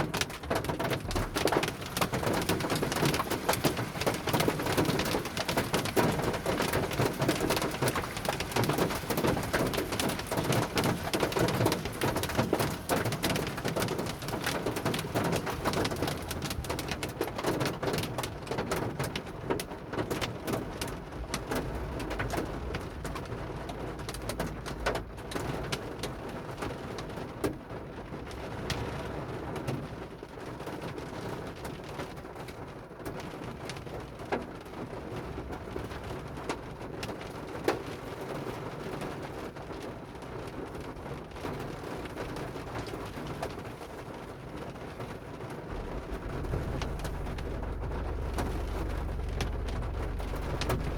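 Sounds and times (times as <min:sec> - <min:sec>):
hail pelting down: 0:00.0 - 0:19.7.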